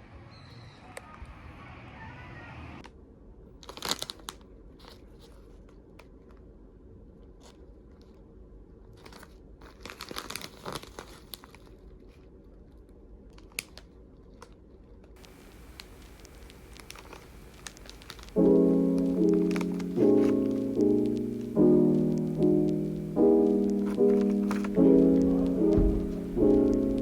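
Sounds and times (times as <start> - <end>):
crinkling of something handled: 3.6 - 6.4, 8.9 - 27.0
sharp clicks: 15.2 - 27.0.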